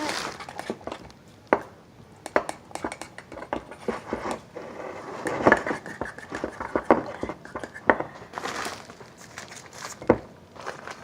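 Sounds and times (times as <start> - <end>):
utensil knocking and scraping bowl: 0.3 - 8.1.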